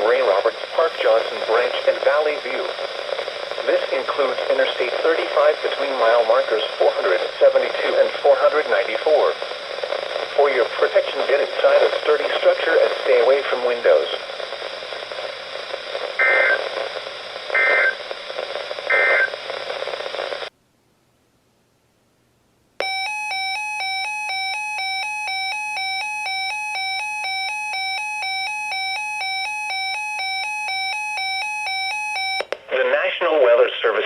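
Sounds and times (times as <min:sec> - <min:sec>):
radio static hiss: 0:00.0 - 0:20.5, 0:32.4 - 0:34.0
data bursts: 0:10.4 - 0:19.5.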